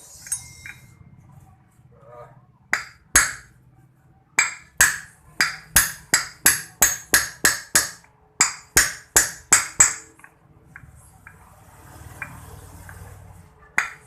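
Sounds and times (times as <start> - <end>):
hammer striking metal: 0.0 - 1.0, 2.7 - 3.6, 4.4 - 10.2, 13.8 - 14.0.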